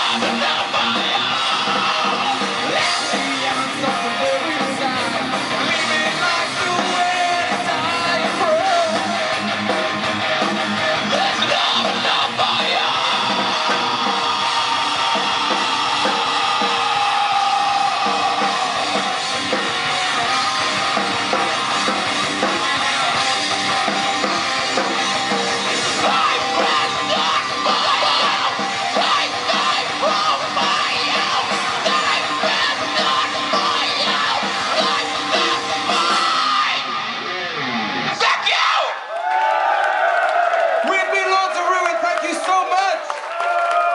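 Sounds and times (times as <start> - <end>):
drum kit: 0.0 - 38.4
electric guitar: 0.0 - 39.2
shouted vocals: 10.6 - 19.6, 25.7 - 43.9.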